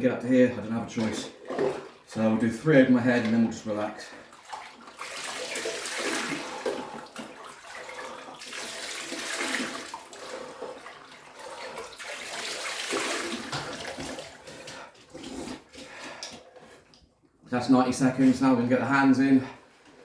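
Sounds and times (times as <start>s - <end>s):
water splashing into ice bath: 0.6s - 16.5s.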